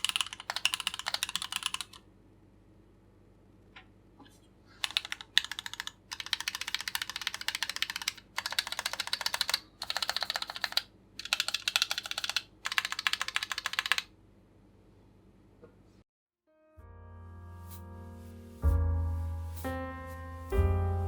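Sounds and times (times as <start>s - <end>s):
mechanical keyboard typing: 0.0s - 2.0s, 4.8s - 14.1s.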